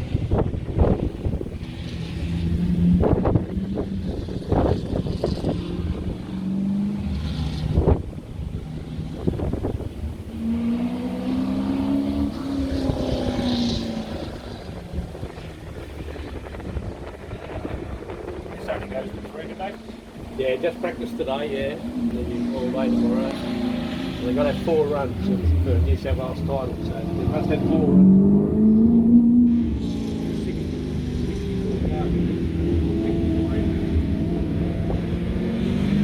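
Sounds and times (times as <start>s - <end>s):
car engine accelerating: 0.0s - 36.0s
wind buffeting microphone: 0.0s - 36.0s.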